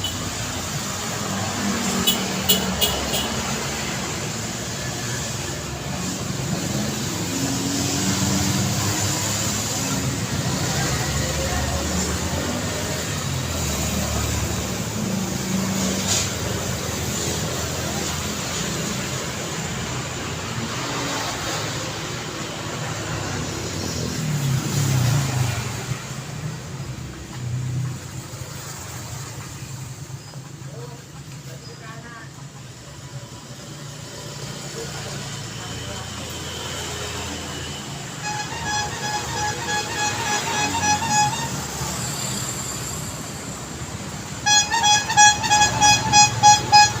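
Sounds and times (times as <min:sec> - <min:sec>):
cars passing: 0:00.0 - 0:47.0
low rumble of street traffic: 0:00.0 - 0:47.0
short high horn toots: 0:38.2 - 0:42.0, 0:44.4 - 0:47.0.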